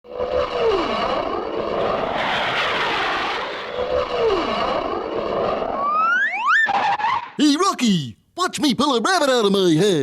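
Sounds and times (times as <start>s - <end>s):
cartoon propeller airplane droning: 0.1s - 7.0s.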